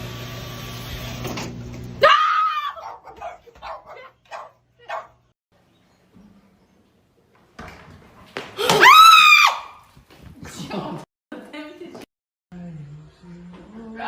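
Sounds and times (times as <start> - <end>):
sudden loud scream: 2.0 - 2.8, 8.6 - 9.8.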